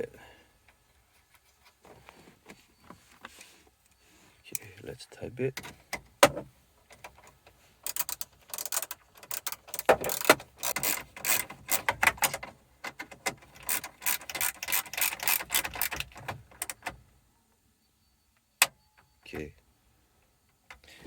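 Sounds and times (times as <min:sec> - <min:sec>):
hand ratchet clicking: 0:07.8 - 0:12.4, 0:13.5 - 0:16.8.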